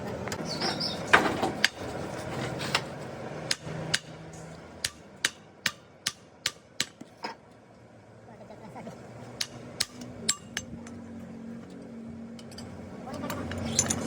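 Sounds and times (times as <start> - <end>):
hammer striking metal: 3.5 - 4.2, 4.8 - 7.0, 9.4 - 10.7.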